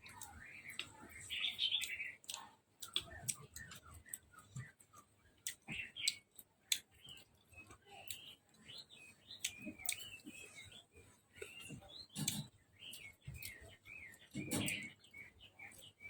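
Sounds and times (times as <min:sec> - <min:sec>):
high bird chirps: 0:00.0 - 0:02.4, 0:05.5 - 0:16.0.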